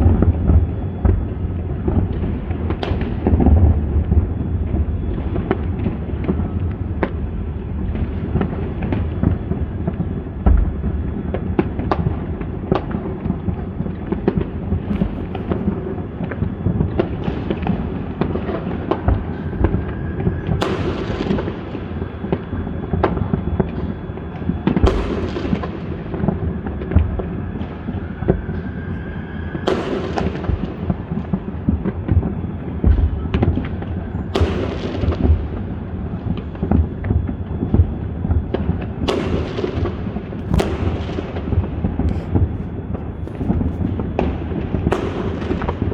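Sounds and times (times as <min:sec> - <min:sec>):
fireworks booms and crackling: 0:00.0 - 0:45.9
firework rising whistle: 0:14.9 - 0:35.9.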